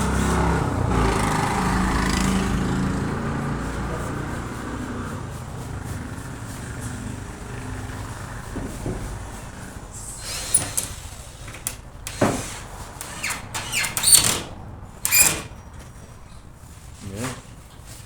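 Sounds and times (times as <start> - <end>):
power tool motor running: 11.6 - 15.5.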